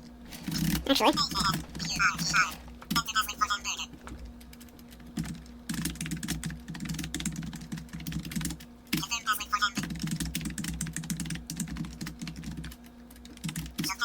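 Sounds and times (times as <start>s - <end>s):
typing on computer keyboard: 4.4s - 9.1s, 9.8s - 14.0s.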